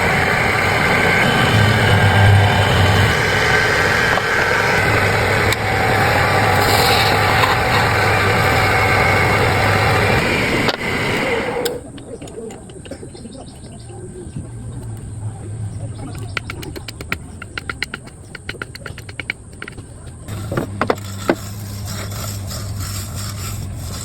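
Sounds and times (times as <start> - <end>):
machine motor humming: 0.0 - 12.4
small clicks: 16.0 - 21.1.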